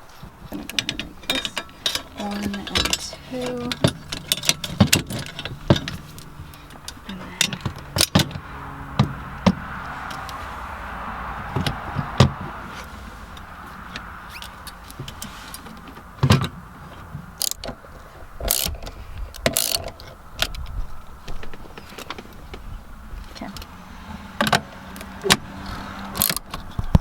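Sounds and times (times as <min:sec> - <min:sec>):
clicks and clanks of parts: 0:00.1 - 0:08.4, 0:13.3 - 0:23.7, 0:24.4 - 0:27.0.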